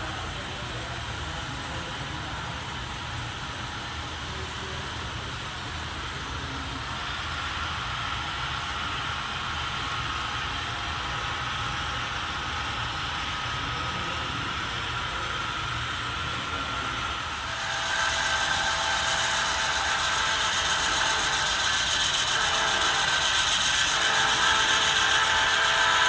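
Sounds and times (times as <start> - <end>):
model train motor whirring: 6.7 - 26.0.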